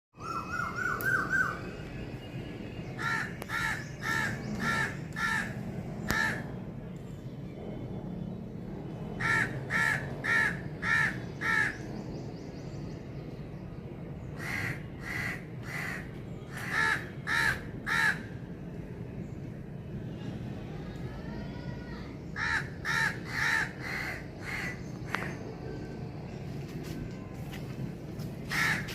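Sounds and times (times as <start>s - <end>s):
crow cawing: 3.0s - 6.4s, 9.2s - 11.8s, 14.4s - 18.3s, 22.4s - 24.8s, 28.5s - 28.9s.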